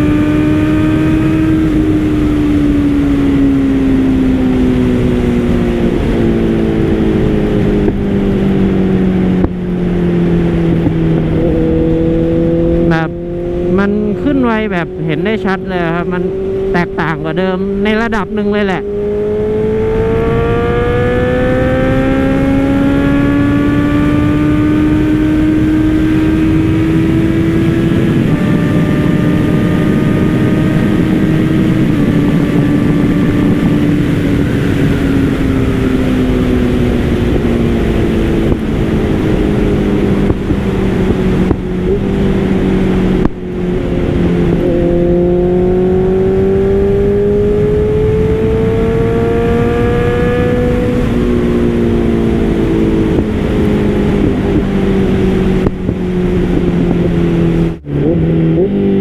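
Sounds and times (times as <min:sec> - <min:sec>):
motorcycle engine accelerating: 0:00.0 - 0:59.0.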